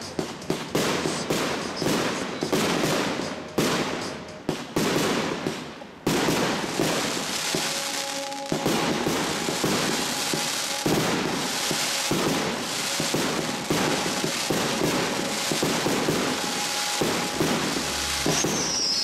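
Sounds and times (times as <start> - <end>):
firework cake firing: 0.0 - 19.0
firework crackling bursts: 0.0 - 19.0
falling firework whistle: 6.2 - 19.0.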